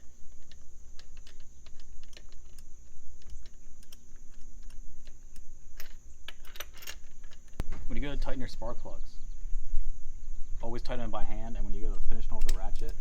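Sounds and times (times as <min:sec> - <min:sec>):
metal parts and tools clicking: 0:00.0 - 0:08.4, 0:12.2 - 0:13.0.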